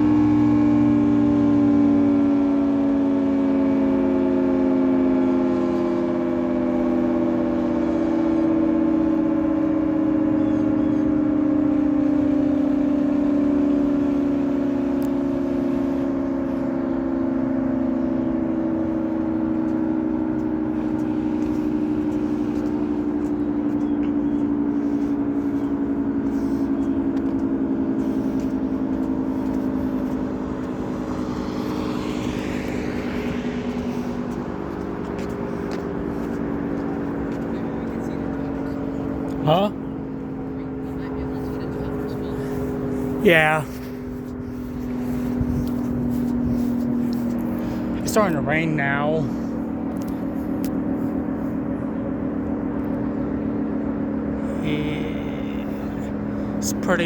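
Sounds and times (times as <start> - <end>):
three-tone warning siren winding down: 0.0 - 43.2.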